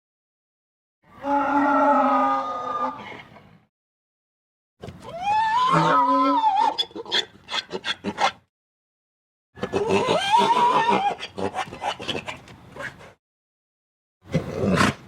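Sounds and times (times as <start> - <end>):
donkey braying: 5.0 - 8.4, 9.6 - 12.4.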